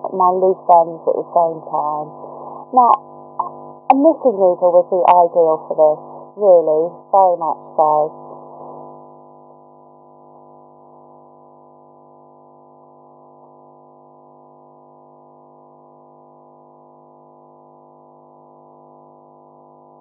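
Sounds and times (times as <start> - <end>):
drone of held tones: 1.1 - 4.4.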